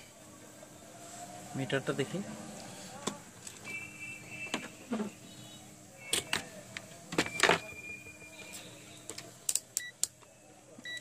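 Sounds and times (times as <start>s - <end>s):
high steady beep: 3.7s - 4.6s, 7.3s - 9.0s.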